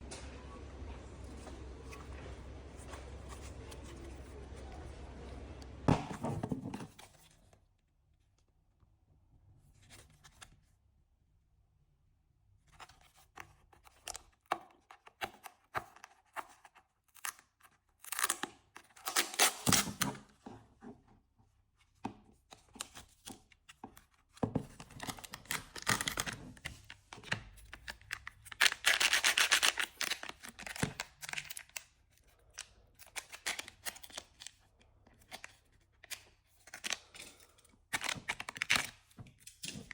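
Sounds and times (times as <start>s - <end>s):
packaging tearing: 27.9s - 31.8s.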